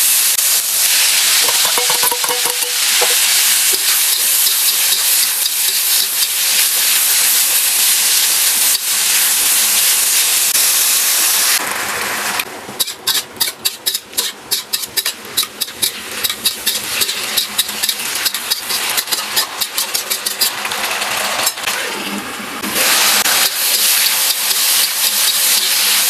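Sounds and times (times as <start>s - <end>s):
steady cooking hiss: 0.0s - 26.0s.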